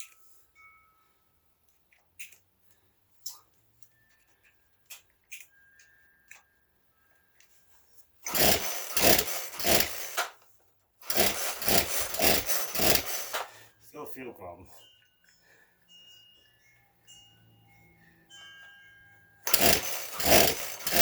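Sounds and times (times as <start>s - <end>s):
chainsaw engine cranking: 8.2s - 10.4s, 11.0s - 13.6s, 19.4s - 21.0s
starter cord yanked: 8.3s - 10.4s, 11.0s - 13.5s, 19.5s - 21.0s.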